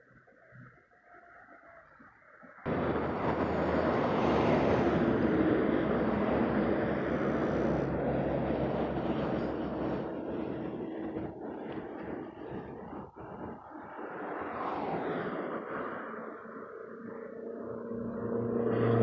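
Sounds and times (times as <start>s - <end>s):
vehicle engine passing: 2.7s - 10.7s, 17.6s - 19.0s.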